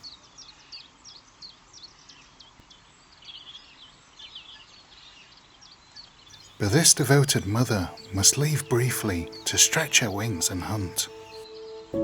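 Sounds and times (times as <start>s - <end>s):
small birds chirping: 6.6s - 12.0s.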